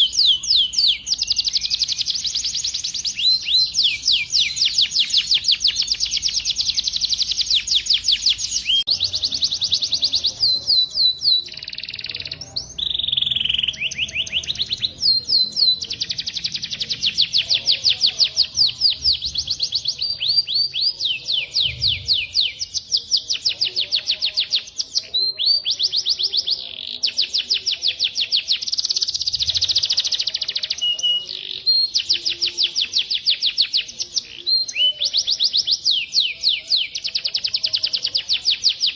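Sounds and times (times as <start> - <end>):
bird trilling: 0.0 - 38.9.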